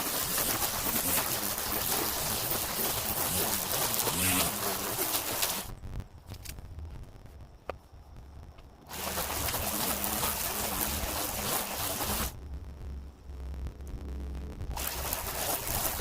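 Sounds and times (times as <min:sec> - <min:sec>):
string trimmer cutting grass: 0:00.0 - 0:05.7, 0:08.9 - 0:12.4, 0:14.8 - 0:16.0.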